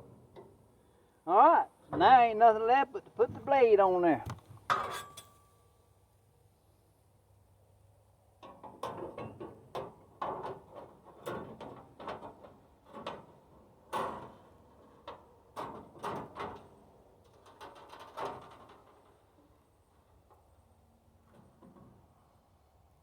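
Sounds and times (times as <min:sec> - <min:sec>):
saw blade clanking and scraping: 0:04.7 - 0:05.4.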